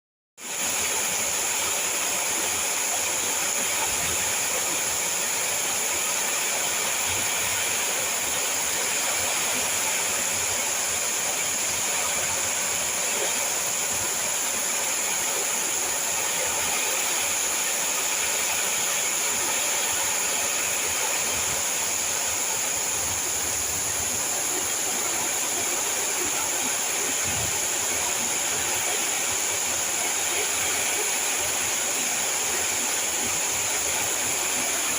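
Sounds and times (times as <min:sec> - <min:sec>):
heavy rain: 0:22.9 - 0:34.9.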